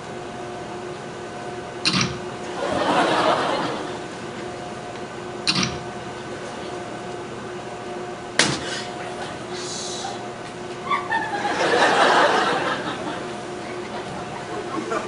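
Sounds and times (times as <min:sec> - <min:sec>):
steady low hum: 0:00.0 - 0:15.0
joints popping: 0:01.9 - 0:02.2, 0:05.5 - 0:05.8.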